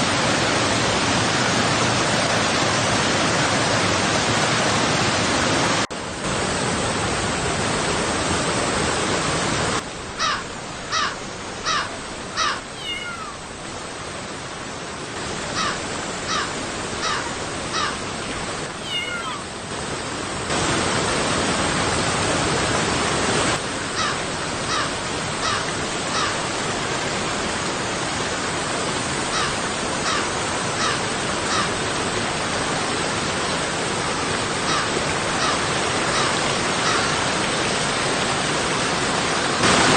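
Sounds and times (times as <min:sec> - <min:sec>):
river water rushing over rocks: 0:00.0 - 0:39.9
animal calling: 0:10.2 - 0:13.5, 0:15.6 - 0:19.6, 0:29.3 - 0:31.7, 0:34.7 - 0:37.2.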